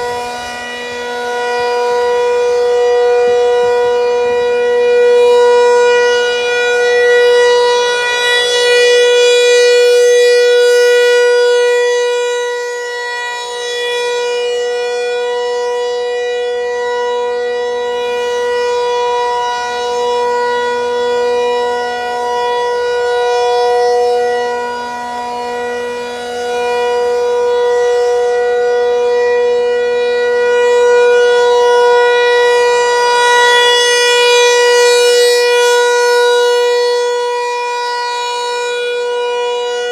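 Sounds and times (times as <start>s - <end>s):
outdoor warning siren: 0.0s - 39.9s.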